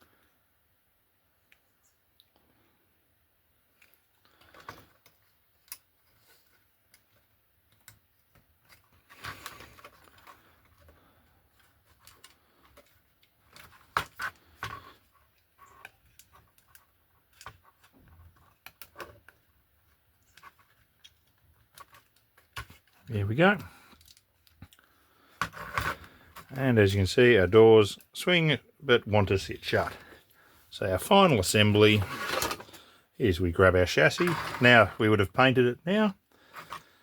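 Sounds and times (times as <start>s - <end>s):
small plastic parts clicking: 23.9s - 24.9s.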